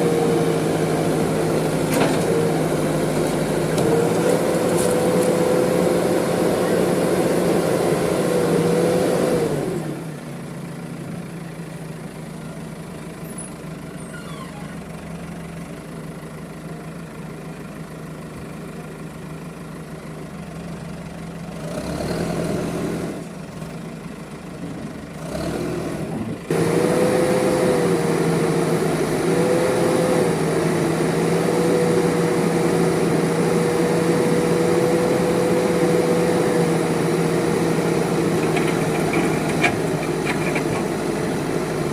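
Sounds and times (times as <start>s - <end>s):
diesel engine revving: 0.0s - 10.3s, 21.6s - 23.4s, 25.0s - 41.9s.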